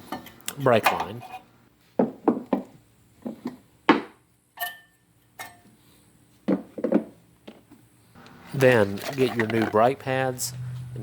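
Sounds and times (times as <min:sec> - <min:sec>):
metal parts clinking and knocking: 0:08.6 - 0:09.9.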